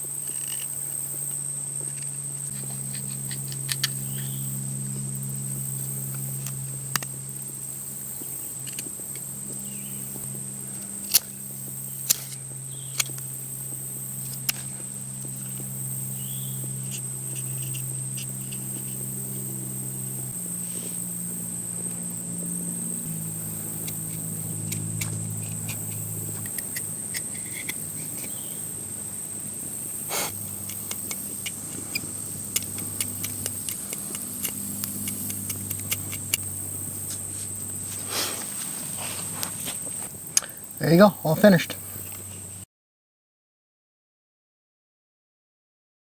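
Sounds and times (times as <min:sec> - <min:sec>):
insects whining: 0:00.0 - 0:42.6
low steady drone: 0:00.7 - 0:42.6.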